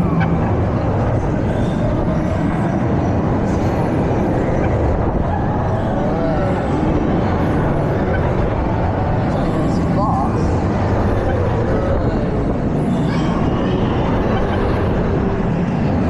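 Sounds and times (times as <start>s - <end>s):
faint voices: 0.0s - 16.0s
fairground ride rumbling: 0.0s - 16.0s.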